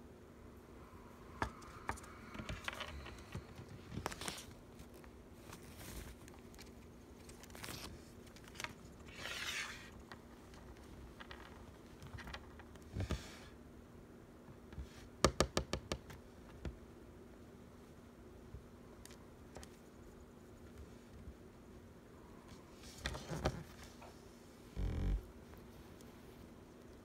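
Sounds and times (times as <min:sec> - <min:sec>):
faint steady hum: 0:00.0 - 0:27.0
small things clicking and scraping: 0:01.4 - 0:12.8.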